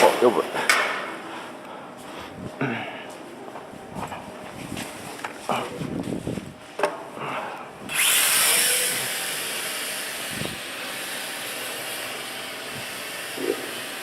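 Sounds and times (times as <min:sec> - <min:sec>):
quadcopter propellers buzzing whine: 0:07.8 - 0:14.0.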